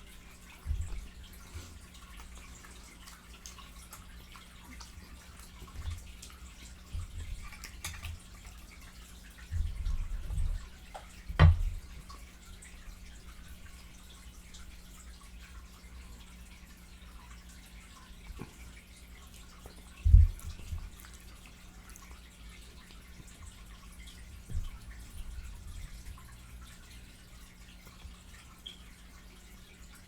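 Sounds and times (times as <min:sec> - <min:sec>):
chewing and mouth smacking: 0:00.2 - 0:09.0, 0:18.3 - 0:23.4.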